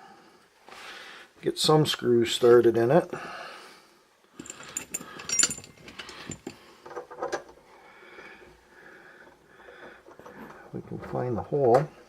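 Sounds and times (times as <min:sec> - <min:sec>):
metal screws clinking: 0:04.4 - 0:07.1.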